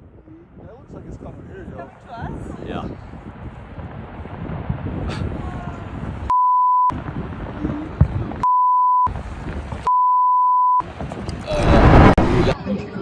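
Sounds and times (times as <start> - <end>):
rumbling outdoor background noise: 0.0 - 9.9, 10.8 - 13.0
censor bleeps: 6.3 - 6.9, 8.4 - 9.1, 9.9 - 10.8.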